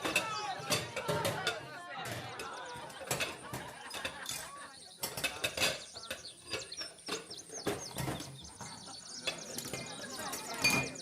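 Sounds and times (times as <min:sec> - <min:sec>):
birds chirping: 0:00.0 - 0:11.0
clinks and knocks: 0:02.3 - 0:11.0.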